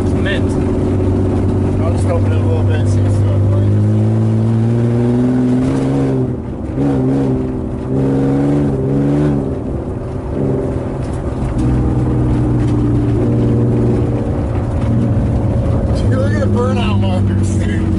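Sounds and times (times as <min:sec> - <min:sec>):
car engine droning from inside: 0:00.0 - 0:17.9.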